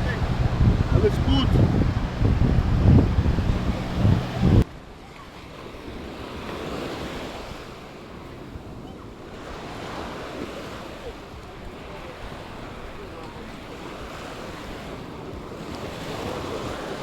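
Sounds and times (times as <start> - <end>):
wind buffeting microphone: 0.0 - 4.7
surf washing onto beach: 0.0 - 17.0.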